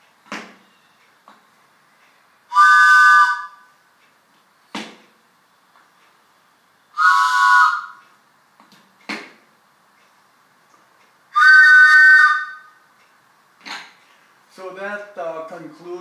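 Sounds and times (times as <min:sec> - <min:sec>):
wooden train whistle blasts: 0:02.5 - 0:03.7, 0:07.0 - 0:08.0, 0:11.4 - 0:12.8.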